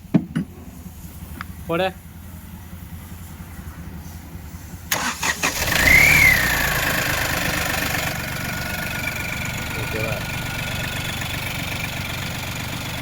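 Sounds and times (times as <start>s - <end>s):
car engine idling: 0.0s - 13.0s
engine cranking on starter: 4.8s - 9.1s.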